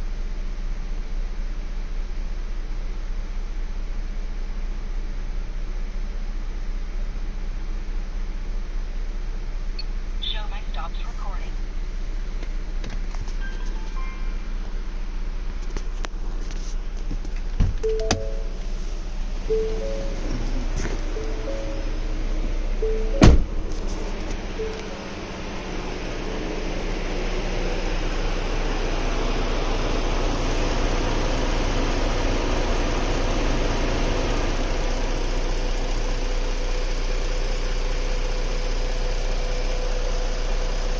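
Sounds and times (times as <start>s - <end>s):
short chime tones: 13.4s - 14.6s, 17.8s - 18.7s, 19.5s - 22.0s
car engine idling roughly: 18.6s - 40.9s.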